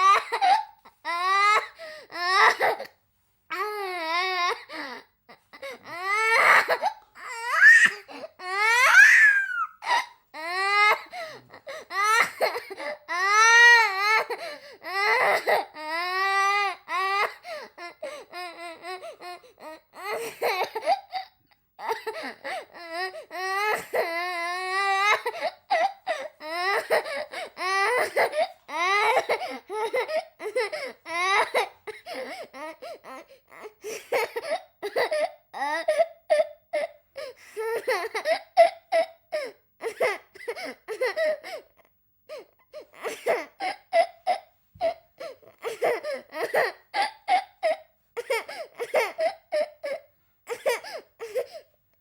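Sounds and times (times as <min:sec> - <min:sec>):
young child crying: 0:05.7 - 0:11.5.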